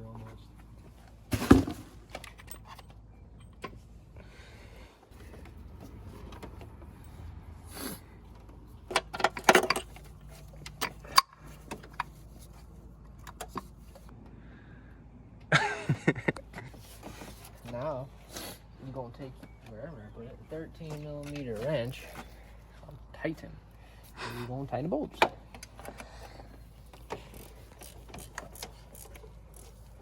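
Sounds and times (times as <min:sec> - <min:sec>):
bolts and hand tools clinking: 0:01.6 - 0:03.9, 0:08.4 - 0:14.1, 0:25.0 - 0:30.0.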